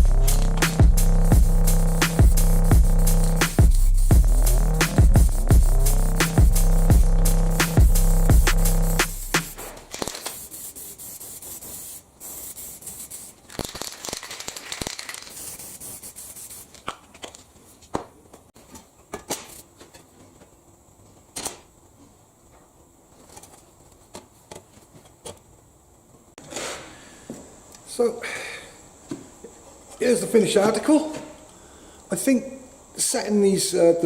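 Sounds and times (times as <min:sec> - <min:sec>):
spray paint can hissing: 0:00.0 - 0:16.8.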